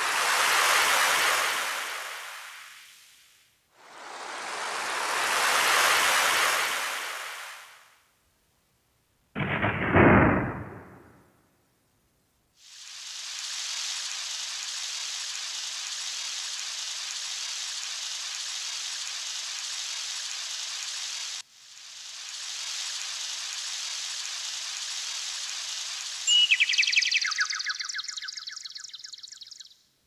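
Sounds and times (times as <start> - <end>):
keyboard rain effect hissing: 0.0 - 7.9, 12.6 - 29.2
keyboard bird chirp effect: 26.3 - 29.6.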